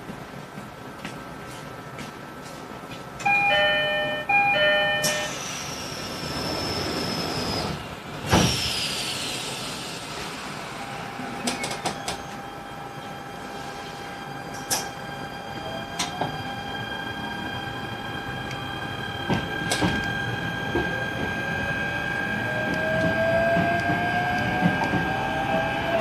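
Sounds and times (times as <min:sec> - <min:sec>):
train door chime: 0:03.2 - 0:05.5
doors closing with hiss and thud: 0:08.2 - 0:09.8.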